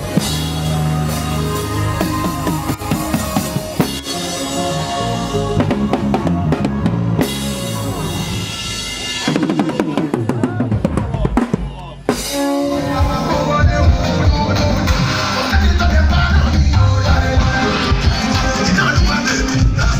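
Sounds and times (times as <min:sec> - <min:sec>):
drum kit playing grooves: 0:00.0 - 0:19.9
sustained pitched instruments: 0:12.1 - 0:19.9.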